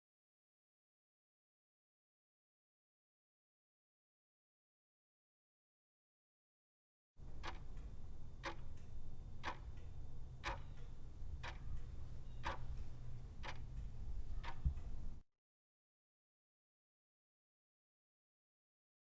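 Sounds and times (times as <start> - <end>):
clock ticking: 7.2 - 15.2
low steady hum: 7.2 - 15.2.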